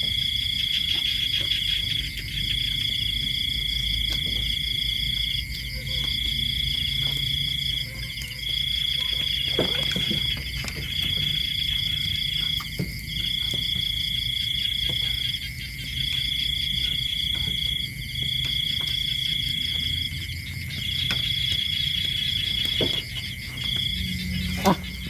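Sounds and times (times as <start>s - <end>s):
low insect drone: 0.0s - 25.0s.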